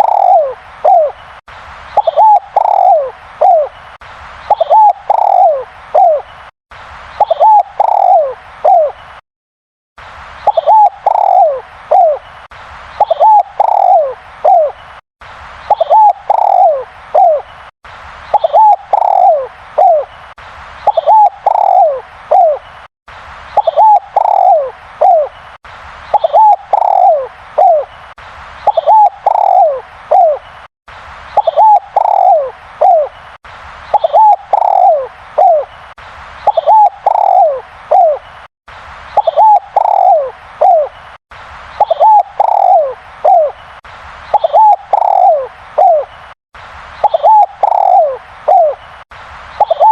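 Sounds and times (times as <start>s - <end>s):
dove cooing: 0.0s - 1.2s, 2.0s - 3.8s, 4.5s - 6.3s, 7.2s - 9.0s, 10.5s - 12.2s, 13.0s - 14.8s, 15.7s - 17.4s, 18.3s - 20.1s, 20.9s - 22.6s, 23.6s - 25.3s, 26.2s - 27.9s, 28.7s - 30.4s, 31.4s - 33.1s, 33.9s - 35.7s, 36.5s - 38.2s, 39.2s - 40.9s, 41.8s - 43.6s, 44.3s - 46.1s, 47.0s - 48.8s, 49.6s - 49.9s.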